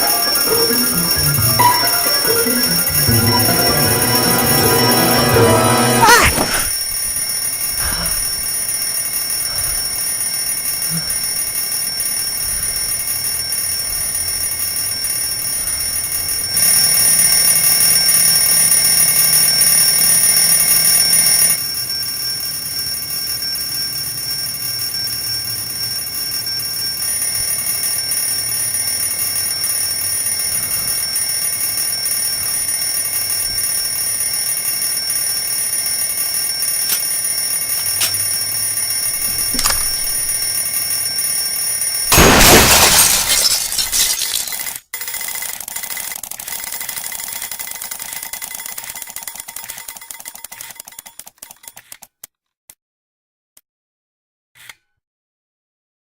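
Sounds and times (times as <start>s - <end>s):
alarm clock ringing: 0.0s - 42.0s.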